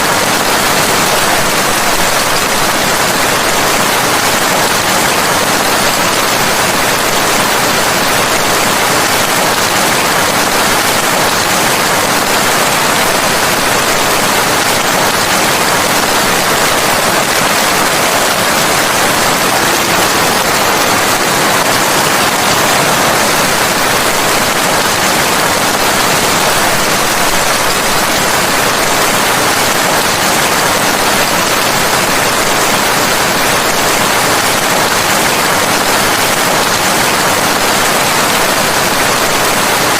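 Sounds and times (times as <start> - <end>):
heavy rain hiss: 0.0 - 39.9.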